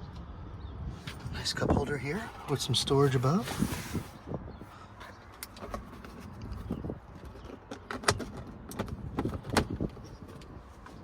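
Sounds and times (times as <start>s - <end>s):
wind rumble on microphone: 0.0s - 4.9s, 5.5s - 11.0s.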